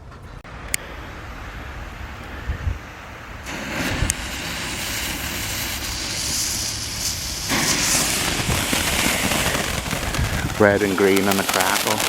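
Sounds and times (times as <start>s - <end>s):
firework hissing and crackling: 3.3s - 12.0s.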